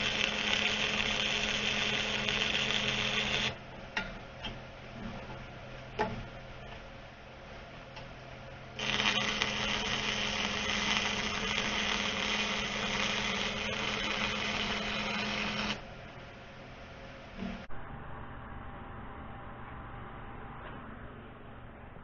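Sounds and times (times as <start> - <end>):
welder arc crackling: 0.0 - 3.6, 8.8 - 15.9
welder low hum: 0.0 - 3.7, 8.6 - 22.0.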